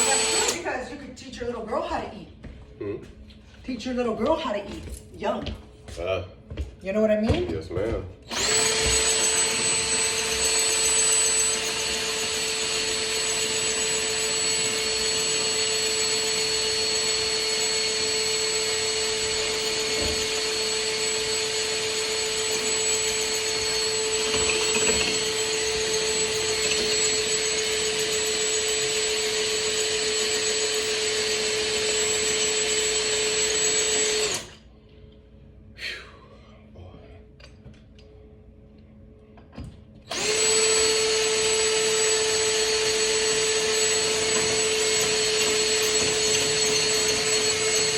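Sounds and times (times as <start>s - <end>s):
power drill boring into brick: 0.0s - 0.6s, 8.3s - 34.6s, 40.1s - 47.9s.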